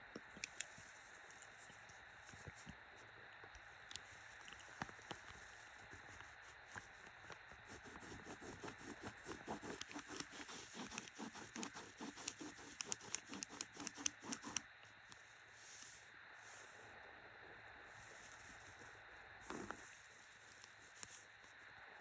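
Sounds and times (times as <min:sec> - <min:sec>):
pen scratching on paper: 0:06.0 - 0:14.6.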